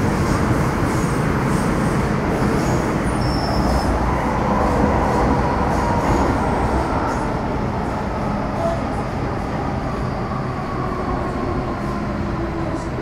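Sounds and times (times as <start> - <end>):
train wheels rumbling on rail: 0.0 - 13.0.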